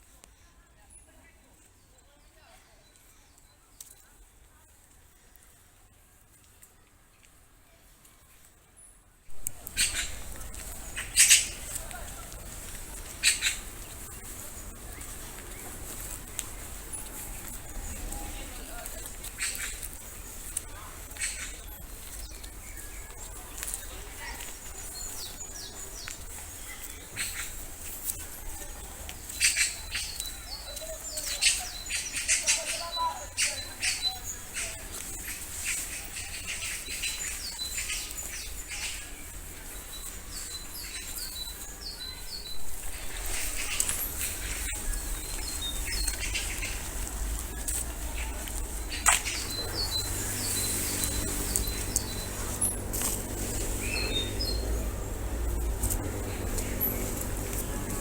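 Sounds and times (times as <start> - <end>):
small birds chirping: 8.1 - 58.0
low rumble: 9.3 - 17.5, 42.5 - 58.0.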